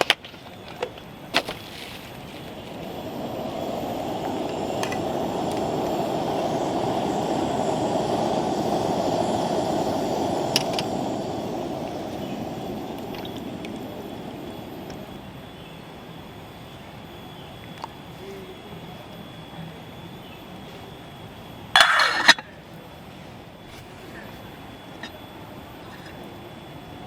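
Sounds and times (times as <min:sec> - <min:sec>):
gas stove burner roaring: 0:00.0 - 0:16.1, 0:21.7 - 0:22.5.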